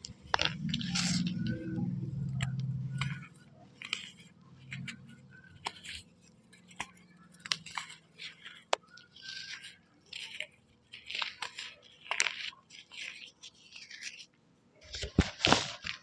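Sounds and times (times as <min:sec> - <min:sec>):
low hum: 0:00.0 - 0:05.6
chalk being chewed: 0:00.0 - 0:14.4.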